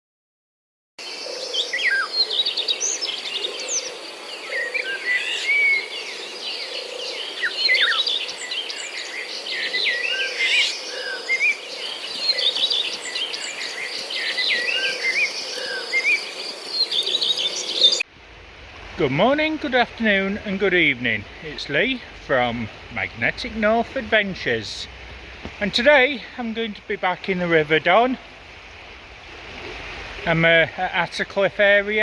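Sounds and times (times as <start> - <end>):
birds singing and chirping: 1.0 - 18.0.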